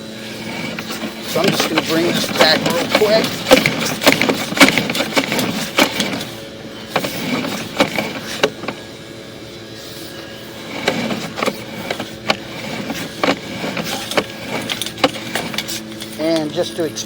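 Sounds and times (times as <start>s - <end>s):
cable clicking and knocking on reel: 0.5s - 8.8s, 10.7s - 16.6s.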